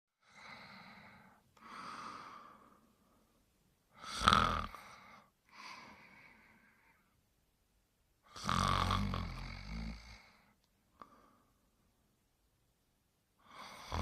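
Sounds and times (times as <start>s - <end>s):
person snoring: 4.0s - 6.6s, 8.3s - 11.4s, 13.4s - 14.0s.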